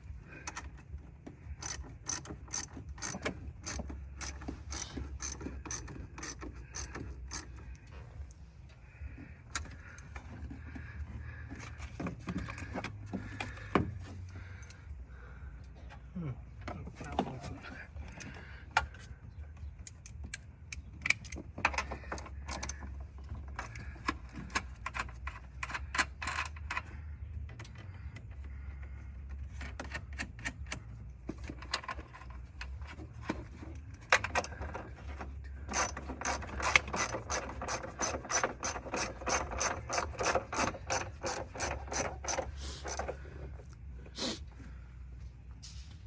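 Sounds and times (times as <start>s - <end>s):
ratchet wrench clicking: 1.5s - 7.7s, 35.7s - 43.2s.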